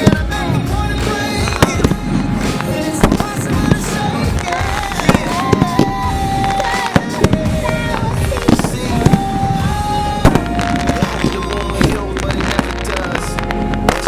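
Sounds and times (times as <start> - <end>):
fireworks crackling: 0.0 - 14.0
fireworks shell bangs: 0.0 - 14.0
music with long held notes: 0.0 - 14.0.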